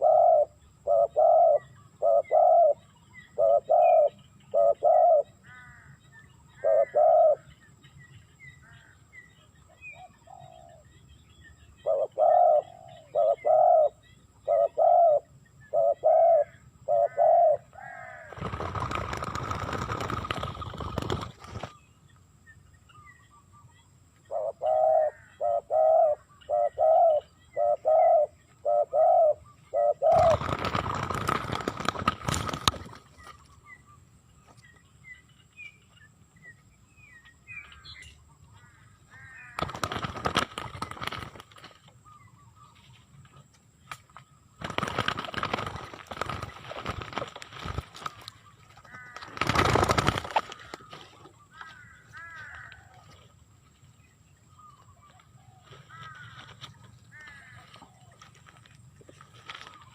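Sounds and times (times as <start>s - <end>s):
dove cooing: 0.0s - 5.7s, 6.5s - 7.5s, 9.9s - 10.9s, 11.8s - 21.8s, 24.2s - 33.1s.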